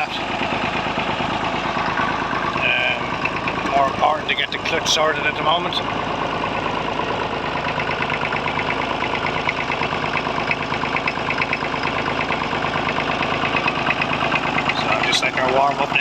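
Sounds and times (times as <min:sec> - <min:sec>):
diesel engine idling: 0:00.0 - 0:16.0
misfiring cylinder knocking: 0:00.7 - 0:04.6.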